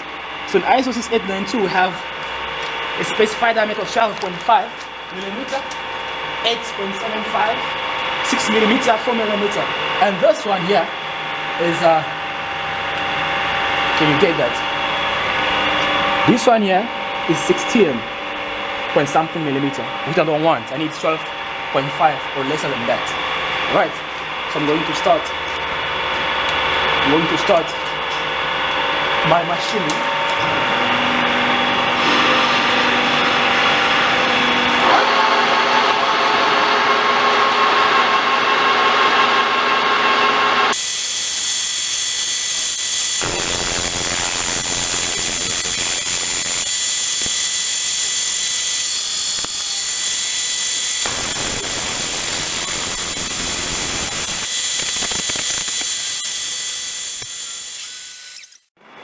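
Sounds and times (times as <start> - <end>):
cutting tool hissing on metal: 40.7 - 58.7
metal lathe whining: 40.7 - 58.7.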